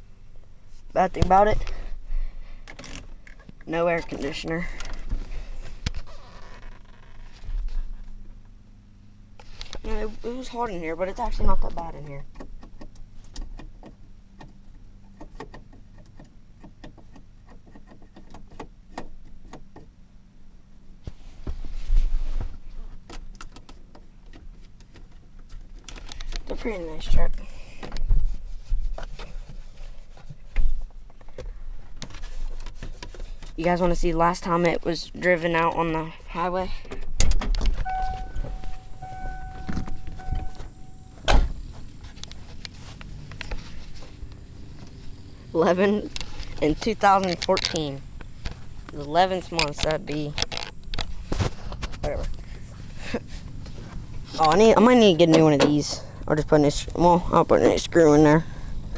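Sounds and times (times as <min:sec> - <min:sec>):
rustling bump: 0:37.6 - 0:45.3
vehicle warning beeper: 0:37.8 - 0:41.6.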